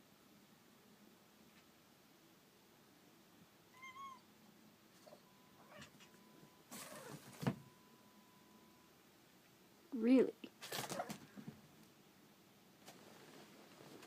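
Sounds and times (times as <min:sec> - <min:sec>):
kitten calling: 0:03.7 - 0:04.3, 0:05.0 - 0:06.2.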